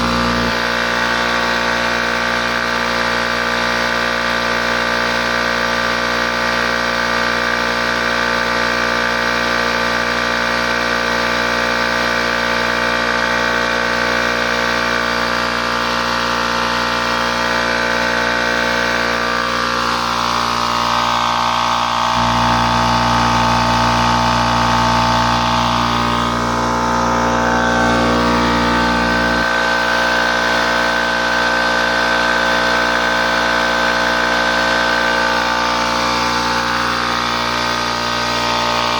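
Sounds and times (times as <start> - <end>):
deeper hum: 0.0 - 1.4, 17.4 - 38.9
air compressor running: 0.0 - 38.9.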